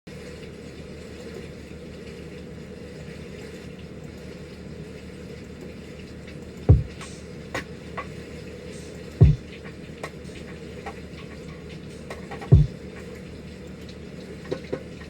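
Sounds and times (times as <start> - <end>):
loud low thump: 6.7 - 7.0.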